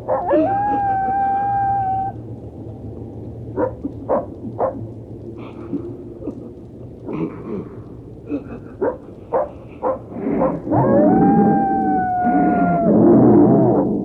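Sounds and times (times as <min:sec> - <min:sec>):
dog yelping: 0:00.0 - 0:02.2, 0:03.6 - 0:04.8, 0:08.8 - 0:12.9
dog howling: 0:00.0 - 0:02.3, 0:08.8 - 0:14.0
steady rumbling rain-like noise: 0:00.0 - 0:14.0.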